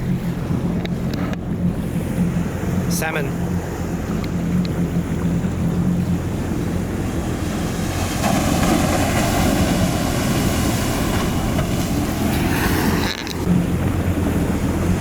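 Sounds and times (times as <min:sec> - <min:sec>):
low engine hum: 0:00.0 - 0:15.0
ocean surf: 0:00.0 - 0:15.0
rush of water: 0:00.0 - 0:15.0
wind buffeting microphone: 0:00.0 - 0:15.0.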